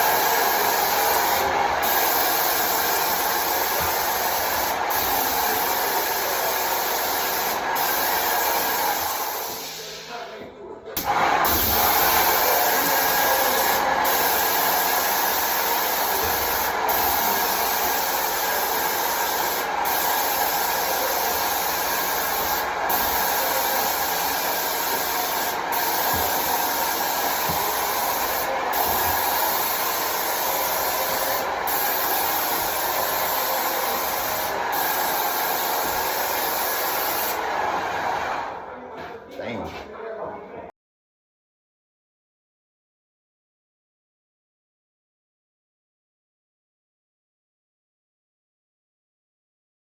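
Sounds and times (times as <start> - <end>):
paint sprayer running: 0.0 - 9.9, 11.0 - 38.3.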